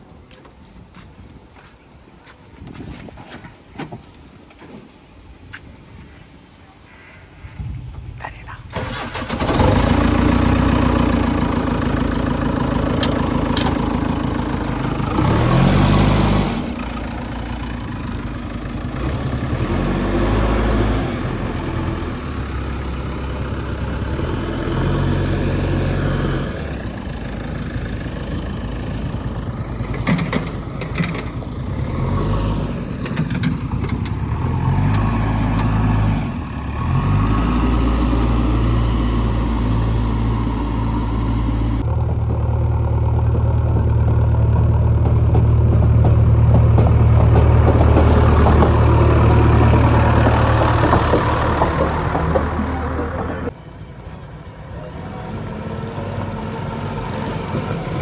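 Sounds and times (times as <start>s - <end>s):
heavy diesel engine running: 8.7s - 58.0s.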